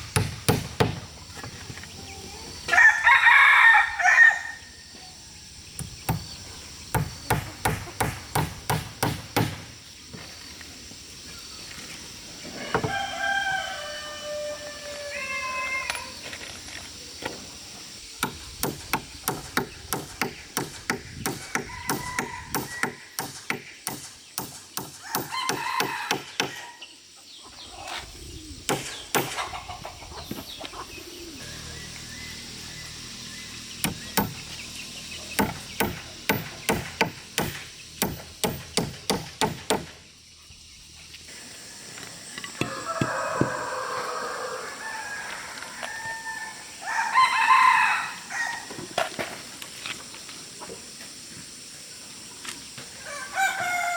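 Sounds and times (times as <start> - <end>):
tool striking timber: 0.0 - 1.1, 5.8 - 9.7, 18.2 - 26.6, 28.7 - 29.5, 33.8 - 34.6, 35.4 - 40.0
chickens clucking: 26.8 - 31.7, 41.6 - 46.0.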